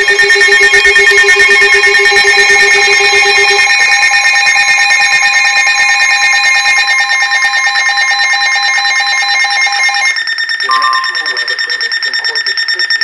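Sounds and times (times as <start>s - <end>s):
weather radio alert alarm: 0.0s - 13.0s.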